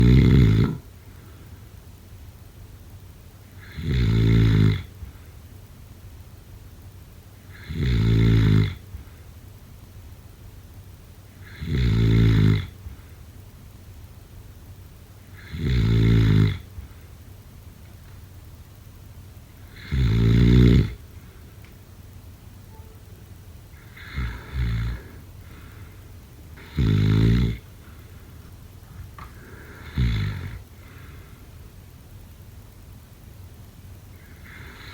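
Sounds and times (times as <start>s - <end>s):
loud snoring: 0.0s - 0.9s, 3.6s - 4.9s, 7.5s - 8.8s, 11.4s - 12.8s, 15.4s - 16.7s, 19.7s - 21.0s, 23.8s - 25.2s, 26.6s - 27.7s, 29.5s - 30.6s, 34.2s - 34.9s
quiet breathing: 0.0s - 1.8s, 23.7s - 31.7s, 34.1s - 34.9s.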